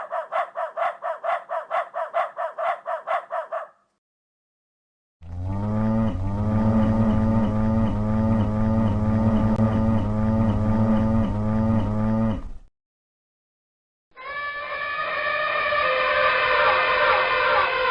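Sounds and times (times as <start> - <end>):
cow mooing: 5.2 - 12.6.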